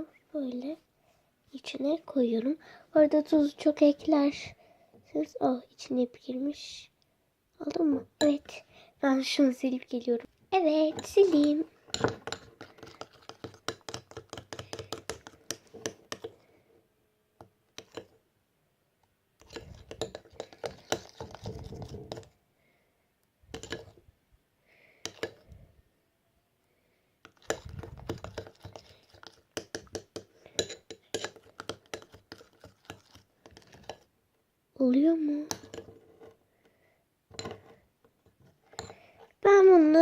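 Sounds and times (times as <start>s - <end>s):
spoon clinking against container: 29.6s - 33.0s.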